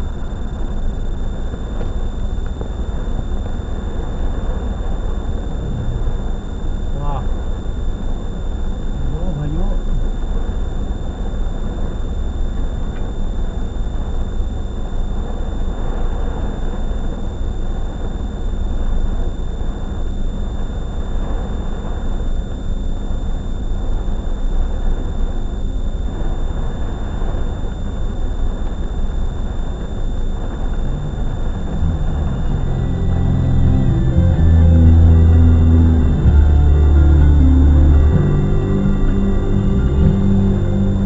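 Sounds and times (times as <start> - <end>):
faint high whine: 0.0 - 41.0
storm wind buffeting a car: 26.1 - 35.4.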